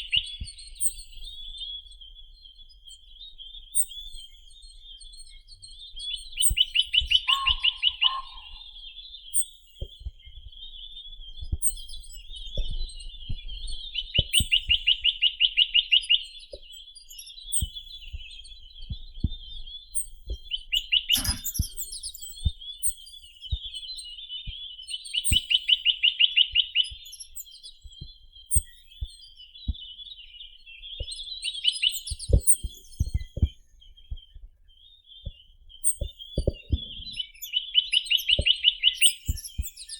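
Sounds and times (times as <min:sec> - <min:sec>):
high bird twittering: 0:00.0 - 0:01.8, 0:06.1 - 0:13.3, 0:19.9 - 0:24.0
bird trilling: 0:06.5 - 0:08.9, 0:20.9 - 0:22.3.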